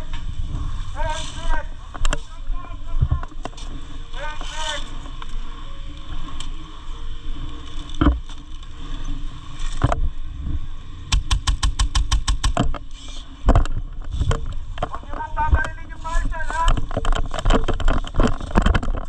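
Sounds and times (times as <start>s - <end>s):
microphone handling noise: 0.0s - 4.8s, 9.8s - 19.0s
low rumbling wind: 0.0s - 19.0s
airsoft gun shots: 11.1s - 12.7s.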